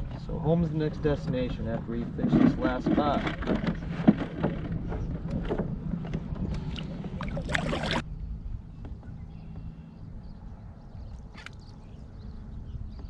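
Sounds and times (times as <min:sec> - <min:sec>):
wind rumble on microphone: 0:00.0 - 0:13.0
paddle strokes splashing water: 0:06.4 - 0:08.0.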